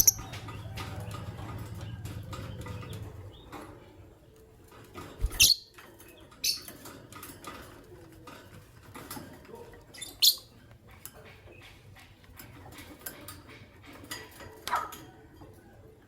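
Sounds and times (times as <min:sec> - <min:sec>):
lovebirds chirping shrilly: 0:05.2 - 0:05.7.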